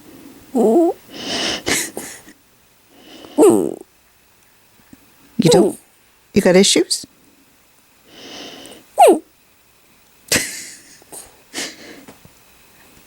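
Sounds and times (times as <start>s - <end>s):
dog vocalizing: 3.3s - 3.8s, 5.4s - 5.8s, 9.0s - 9.2s.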